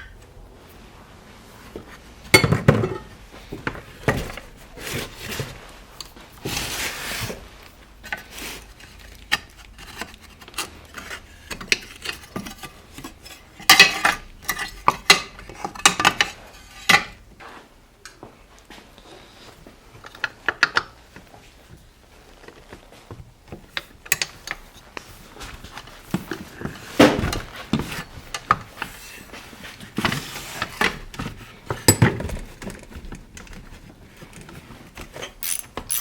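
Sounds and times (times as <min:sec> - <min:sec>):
metal tools clinking and clattering: 0:35.3 - 0:36.0.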